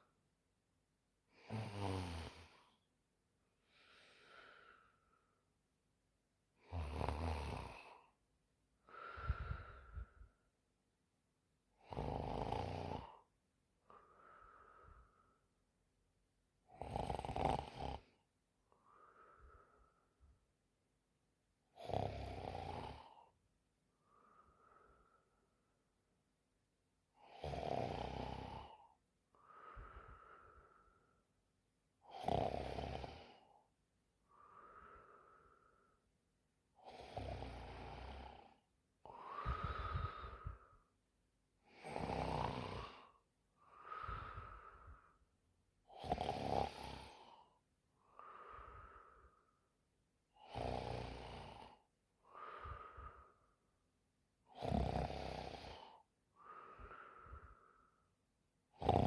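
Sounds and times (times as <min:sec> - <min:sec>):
woman snoring: 0:01.3 - 0:02.8, 0:06.6 - 0:08.2, 0:11.8 - 0:13.3, 0:16.7 - 0:18.2, 0:21.7 - 0:23.4, 0:27.2 - 0:30.8, 0:32.1 - 0:33.5, 0:36.8 - 0:40.8, 0:41.7 - 0:45.0, 0:45.9 - 0:47.6, 0:50.4 - 0:53.4, 0:54.5 - 0:57.7, 0:58.7 - 0:59.0.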